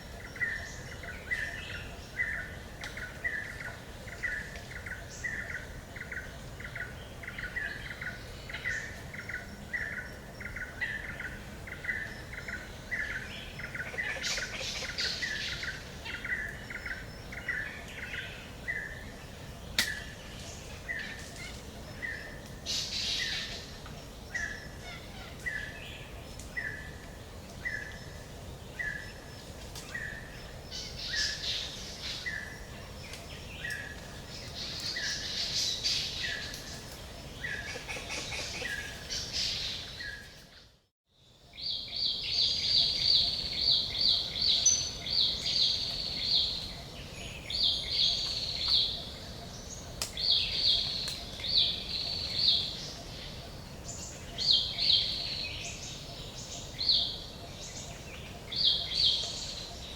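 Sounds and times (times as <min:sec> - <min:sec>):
birds chirping: 0:00.0 - 0:40.8.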